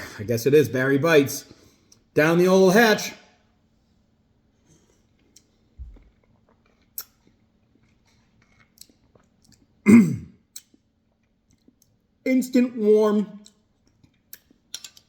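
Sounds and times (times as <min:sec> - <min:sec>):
wet mouth clicks: 0:06.5 - 0:07.3, 0:10.5 - 0:10.8.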